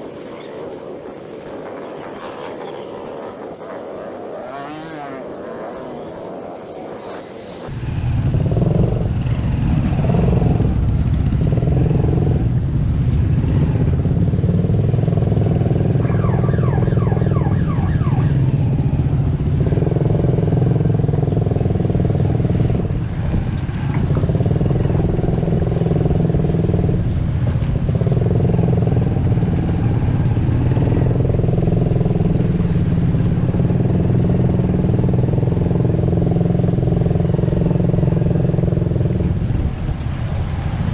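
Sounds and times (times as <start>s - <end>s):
rising whines: 0.0s - 7.8s.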